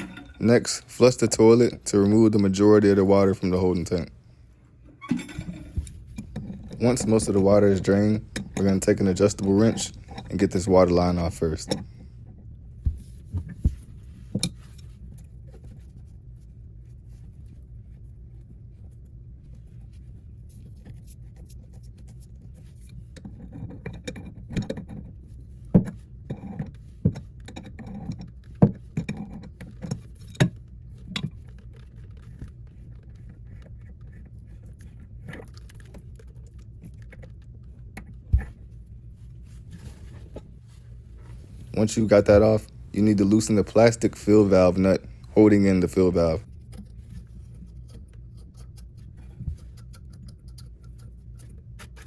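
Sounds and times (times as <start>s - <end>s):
wrench clinking and scraping: 0.0s - 0.6s, 5.0s - 7.3s
low steady hum: 0.0s - 52.0s.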